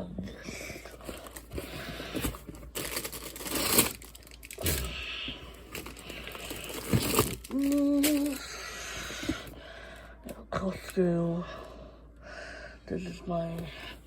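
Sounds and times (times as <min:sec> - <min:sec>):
plastic wrapping crinkling: 0:00.9 - 0:04.9, 0:05.7 - 0:08.4.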